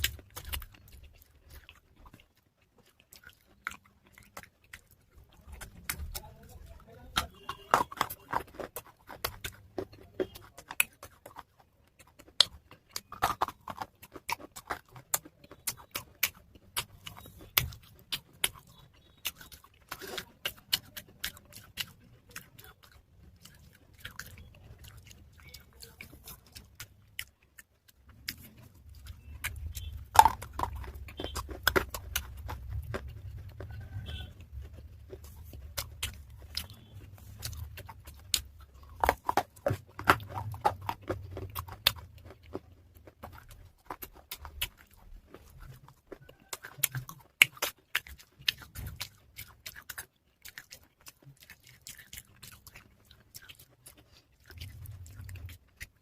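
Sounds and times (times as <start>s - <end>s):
chewing and crunching clay pieces: 0.0s - 56.0s.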